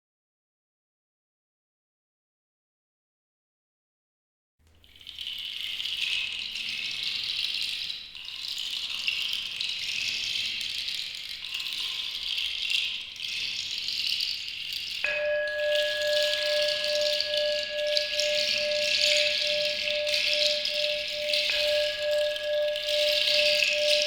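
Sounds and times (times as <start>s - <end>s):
jingle bells shaken: 14.1s - 24.0s.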